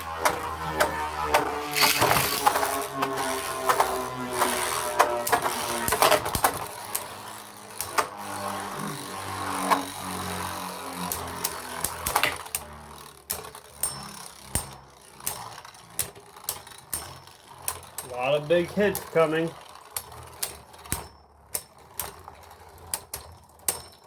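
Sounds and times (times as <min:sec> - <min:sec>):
spinning tops whirring: 0:00.0 - 0:24.0
sharp clacks of tops colliding: 0:00.8 - 0:06.6, 0:13.3 - 0:18.1.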